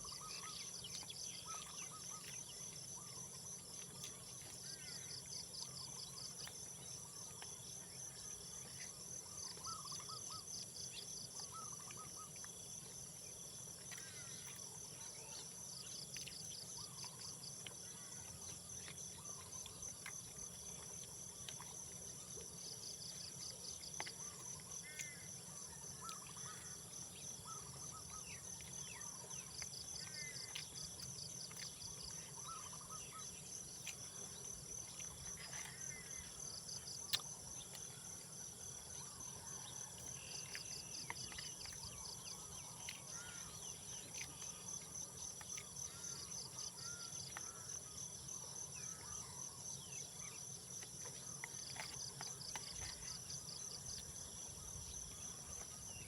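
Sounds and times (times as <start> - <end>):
insect pulsing chirp: 0.0 - 56.0
insects trilling: 0.0 - 56.0.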